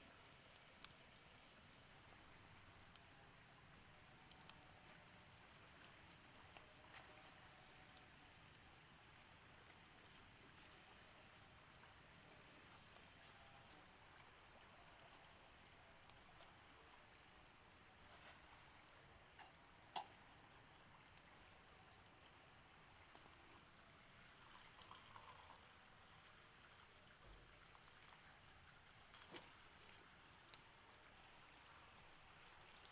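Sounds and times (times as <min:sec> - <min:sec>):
tiny ticks: 0:00.1 - 0:01.9, 0:04.1 - 0:04.6, 0:29.1 - 0:30.7.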